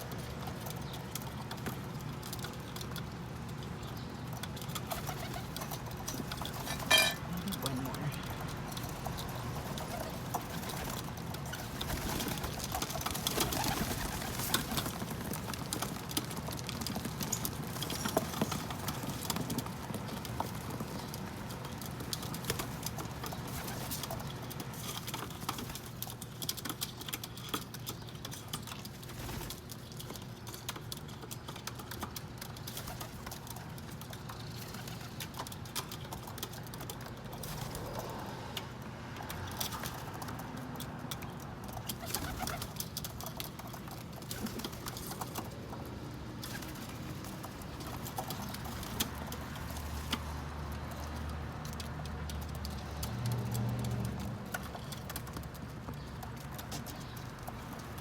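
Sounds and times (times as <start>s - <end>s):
pigeons pecking seeds: 0.0s - 58.0s
pigeons cooing: 4.6s - 15.1s, 41.7s - 43.0s.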